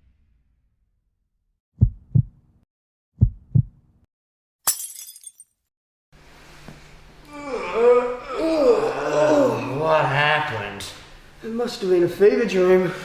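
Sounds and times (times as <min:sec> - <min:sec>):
heartbeat thumps: 0:01.8 - 0:02.5, 0:03.2 - 0:03.9
glass breaking crash: 0:04.7 - 0:05.5.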